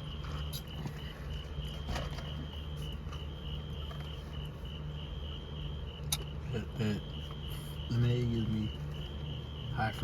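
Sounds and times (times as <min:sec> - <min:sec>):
crickets chirping: 0:00.0 - 0:10.0
steady low hum: 0:00.0 - 0:10.0.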